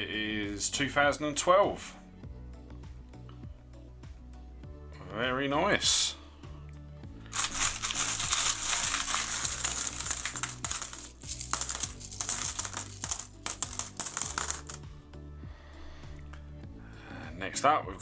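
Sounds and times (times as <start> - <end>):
coins clinking and jingling: 7.3 - 14.9.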